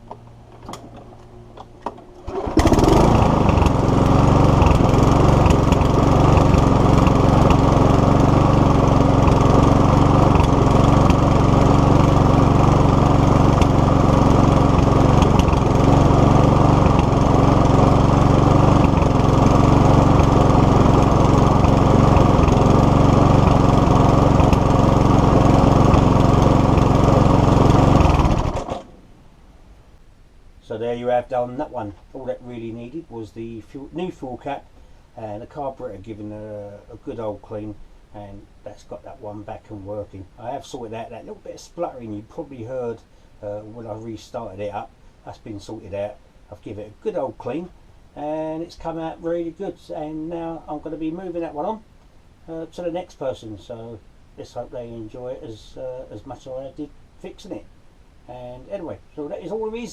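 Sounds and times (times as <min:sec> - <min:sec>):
lawnmower engine running: 0:00.0 - 0:29.2.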